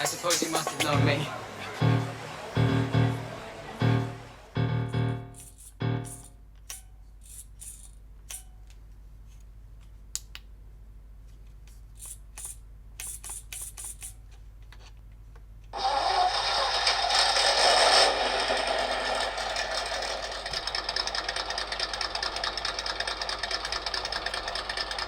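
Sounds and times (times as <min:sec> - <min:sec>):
toy car mechanical buzz: 0:05.3 - 0:08.5, 0:12.0 - 0:14.2, 0:15.8 - 0:25.0.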